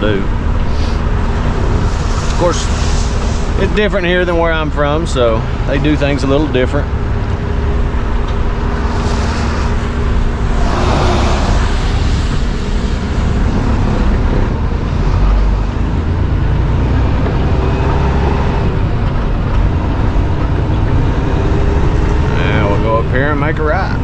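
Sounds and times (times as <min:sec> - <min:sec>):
truck engine drone: 0:00.0 - 0:24.0
tyre and road noise: 0:00.0 - 0:24.0
hissing noise: 0:00.6 - 0:04.8, 0:07.6 - 0:14.3.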